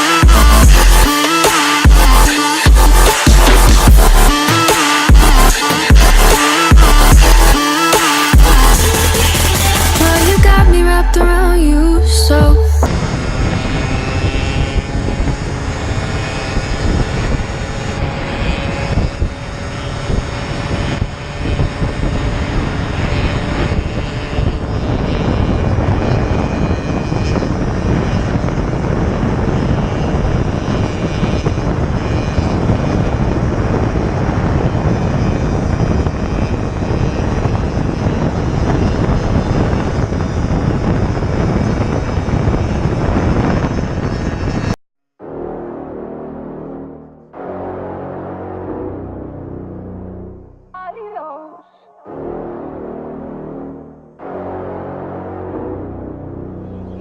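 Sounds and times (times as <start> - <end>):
wind noise on microphone: 0.0 - 1.1, 1.8 - 44.8
motorcycle engine running: 0.0 - 51.3, 52.1 - 57.0.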